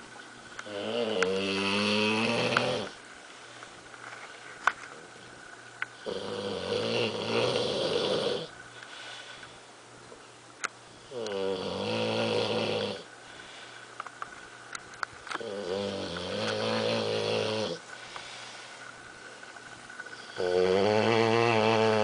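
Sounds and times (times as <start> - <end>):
dog snoring: 0.6 - 3.0, 6.0 - 8.6, 11.1 - 13.1, 15.4 - 18.4, 20.1 - 22.0.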